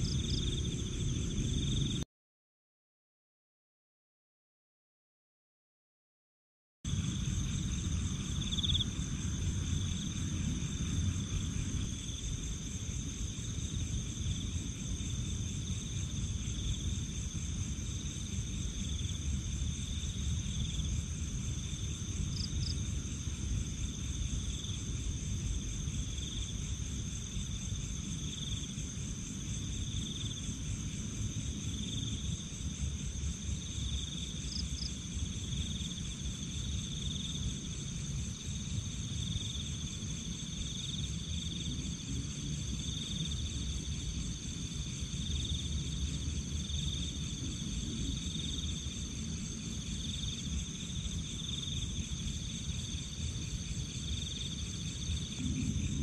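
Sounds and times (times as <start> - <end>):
crickets trilling: 0.0 - 2.0, 6.9 - 56.0
low rumble: 55.3 - 56.0.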